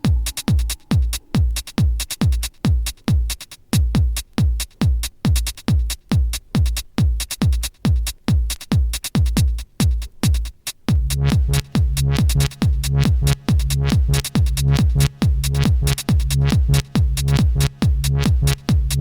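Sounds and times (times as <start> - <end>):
electronic dance music: 0.0 - 3.4, 11.0 - 19.0
hi-hats: 0.0 - 19.0
kick-drum beat: 0.0 - 19.0.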